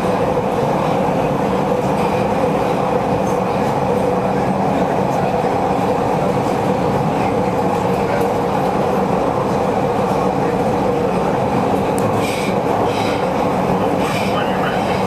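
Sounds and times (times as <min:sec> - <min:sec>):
train wheels and motors rumbling: 0:00.0 - 0:15.0
wheels clickety-clack: 0:01.8 - 0:15.0.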